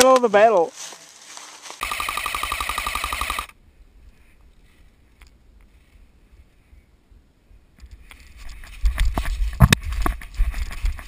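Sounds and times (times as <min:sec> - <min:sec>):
airsoft rifle full-auto burst: 0:01.8 - 0:03.6.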